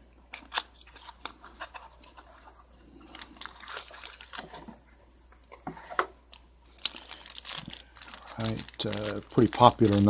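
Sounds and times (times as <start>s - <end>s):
packaging clicks and rustles: 3.0s - 4.7s, 6.7s - 10.0s.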